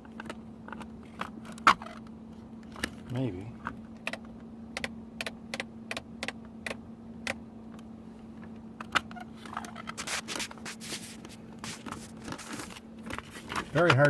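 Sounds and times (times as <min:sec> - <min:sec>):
steady low hum: 0:00.0 - 0:14.0
rustling and scraping of plastic parts: 0:08.9 - 0:14.0.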